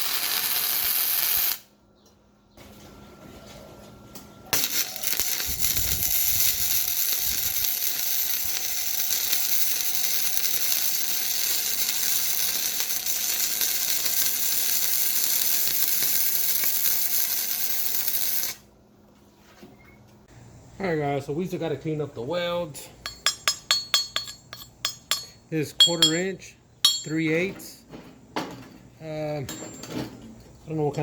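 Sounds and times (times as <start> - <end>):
welding arc crackling: 0.0 - 1.7, 4.6 - 18.7.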